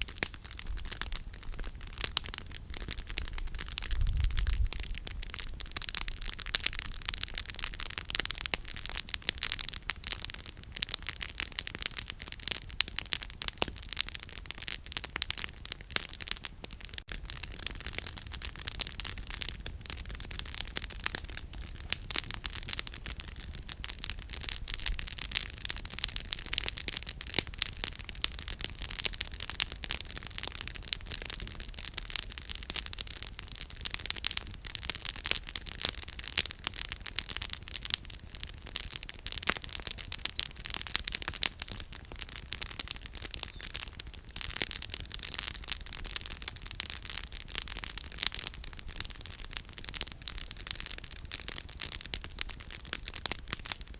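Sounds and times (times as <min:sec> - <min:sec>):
campfire crackling and popping: 0:00.0 - 0:53.9.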